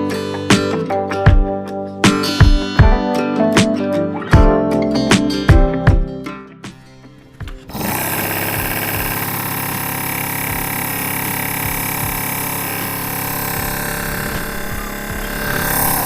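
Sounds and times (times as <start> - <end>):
small motor whining: 7.7 - 16.0.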